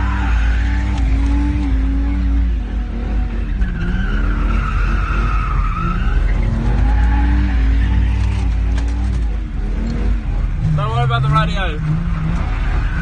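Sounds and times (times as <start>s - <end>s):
tyres squealing on road: 0.0s - 1.5s, 3.2s - 8.7s, 11.0s - 13.0s
car engine at high revs: 0.0s - 13.0s.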